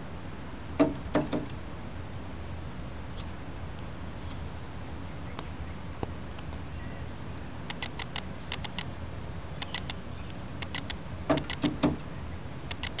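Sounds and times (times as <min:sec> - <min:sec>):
steady low hum: 0:00.0 - 0:13.0
bird chirping: 0:04.2 - 0:05.9, 0:06.6 - 0:07.2, 0:09.5 - 0:13.0.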